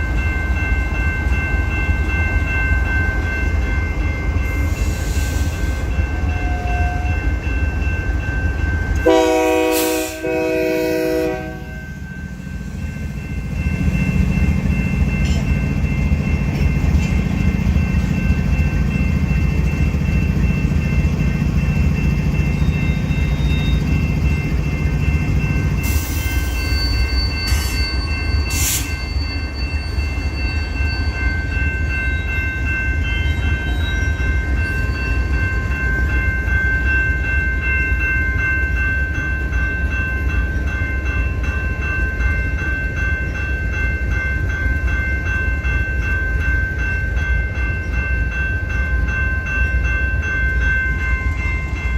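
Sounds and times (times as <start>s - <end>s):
freight train rumble: 0.0s - 51.9s
steady high tones: 11.6s - 51.9s.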